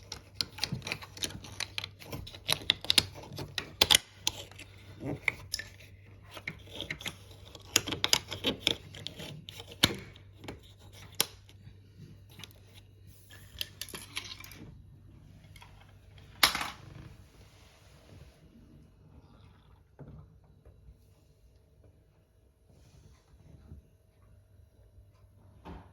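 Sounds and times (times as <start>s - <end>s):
low steady hum: 0.0s - 25.9s.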